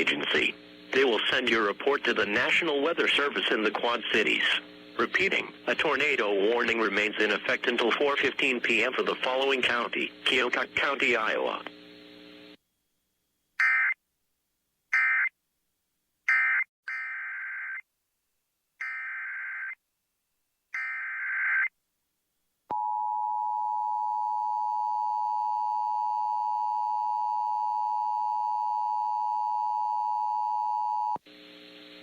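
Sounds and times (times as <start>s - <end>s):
digital data screech bursts: 18.8s - 19.8s, 20.8s - 21.7s.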